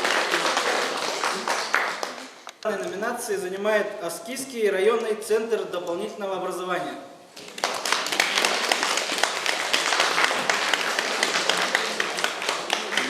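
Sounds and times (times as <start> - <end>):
audience applauding: 0.0 - 2.4, 7.4 - 13.0.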